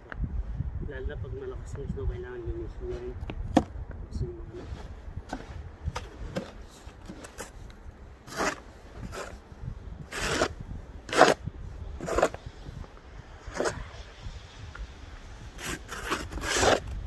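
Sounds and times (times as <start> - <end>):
packed snow crunching and scraping: 2.8 - 3.2, 4.4 - 17.0.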